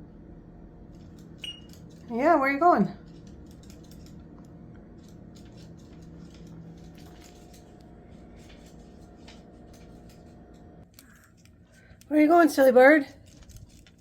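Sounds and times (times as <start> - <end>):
low hum: 0.0 - 12.0
parrot claws clicking and scratching: 3.0 - 14.0.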